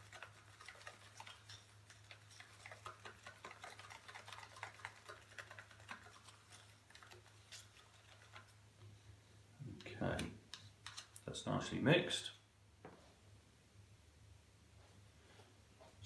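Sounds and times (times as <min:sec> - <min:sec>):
stick stirring resin in cup: 0:00.0 - 0:08.6.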